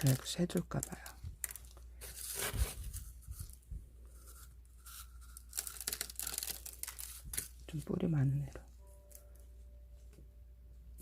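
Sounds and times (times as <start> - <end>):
potting mix crackling: 0.0 - 9.2
plant rustling and tearing: 4.2 - 7.9.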